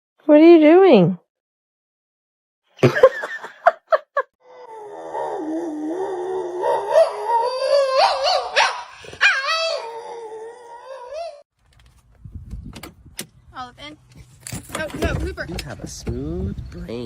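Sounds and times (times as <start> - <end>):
dog yipping and howling: 4.6 - 11.4.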